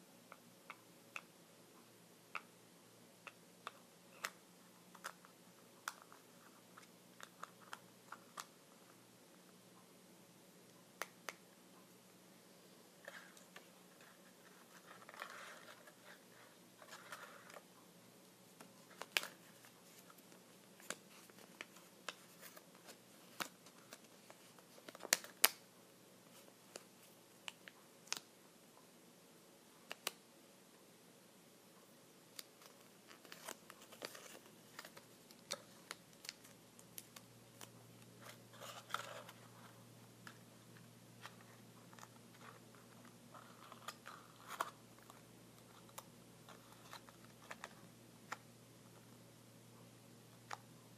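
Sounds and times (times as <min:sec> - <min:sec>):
soft scratching or rustling: 0:13.0 - 0:17.6.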